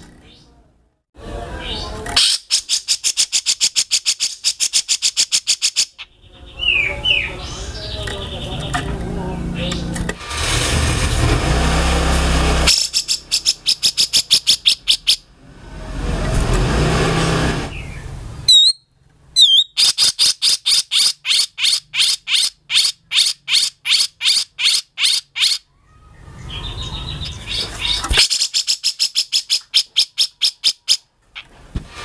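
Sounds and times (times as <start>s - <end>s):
noisy rasping: 8.6s - 13.7s, 15.4s - 17.8s
swooping whistles: 18.5s - 18.8s.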